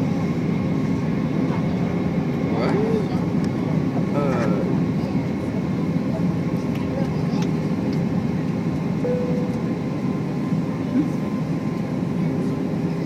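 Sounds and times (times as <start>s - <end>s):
jet engines droning: 0.0s - 13.0s
faint steady tones: 9.0s - 10.6s.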